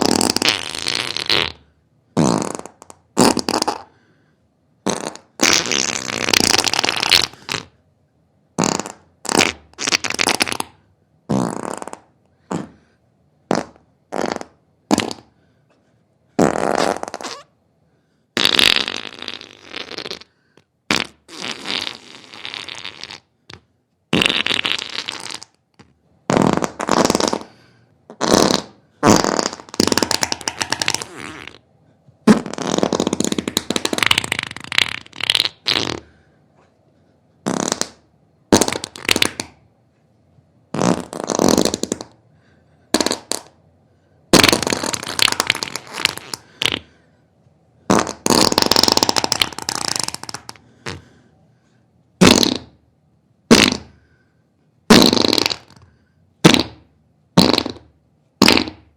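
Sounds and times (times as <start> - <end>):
farts: 0.0 - 4.0, 4.8 - 7.8, 8.6 - 12.9, 13.5 - 15.4, 16.4 - 17.6, 18.4 - 31.6, 32.2 - 36.2, 37.4 - 39.6, 40.7 - 42.2, 42.9 - 43.6, 44.3 - 47.0, 47.9 - 51.2, 52.2 - 52.8, 53.5 - 54.1, 54.9 - 58.9.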